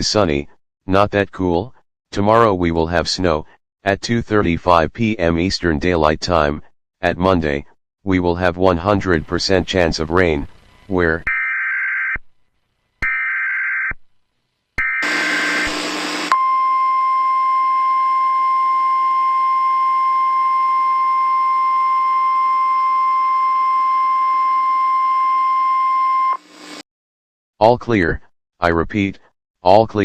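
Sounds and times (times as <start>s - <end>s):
static hiss: 10.2s - 11.2s, 15.0s - 16.3s, 26.4s - 26.8s
steady warning alarm tone: 11.3s - 12.2s, 13.0s - 14.0s, 14.8s - 26.8s
harsh warbling data bursts: 14.8s - 16.3s.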